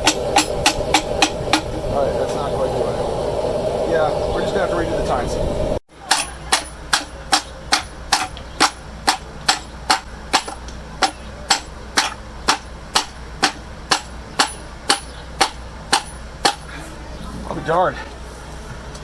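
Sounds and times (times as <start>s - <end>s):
hammer blows on metal: 0.0s - 2.4s, 6.0s - 16.7s.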